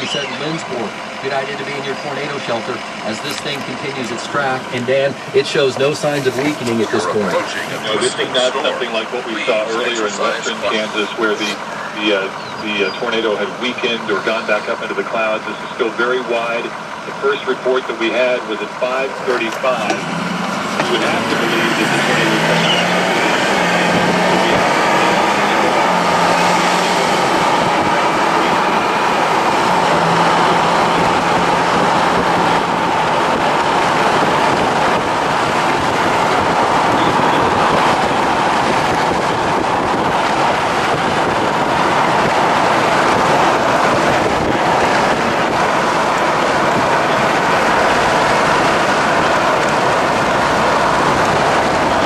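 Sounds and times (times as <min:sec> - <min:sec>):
loud rushing noise: 0:19.2 - 0:52.0.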